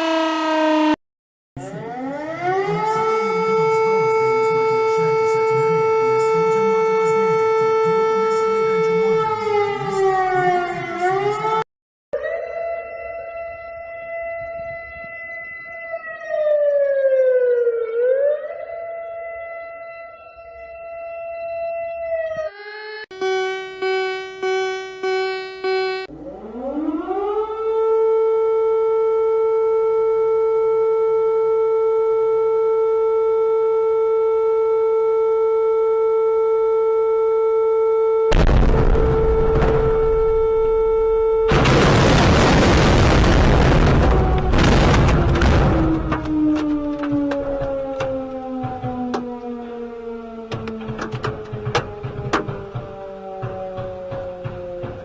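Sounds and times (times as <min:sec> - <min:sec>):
emergency siren tone: 0:00.0 - 0:01.0, 0:01.6 - 0:55.0
short alarm tones: 0:22.5 - 0:26.2, 0:28.6 - 0:43.0.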